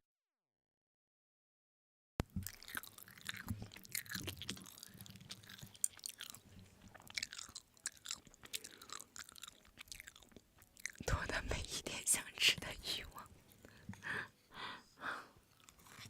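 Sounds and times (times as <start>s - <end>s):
person chewing: 2.2s - 11.1s, 15.5s - 16.0s.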